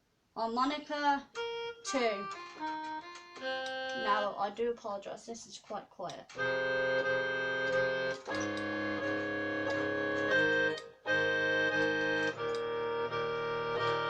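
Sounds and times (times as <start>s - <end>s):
keyboard harmonica chords: 1.3s - 4.4s, 6.3s - 14.0s.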